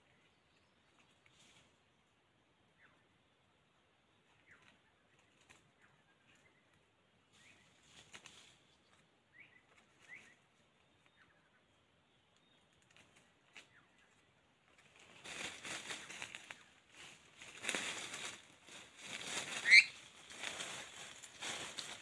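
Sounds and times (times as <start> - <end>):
faint bird chirps: 2.5 - 14.8, 19.6 - 20.0
rustling: 7.3 - 9.1, 12.7 - 22.0.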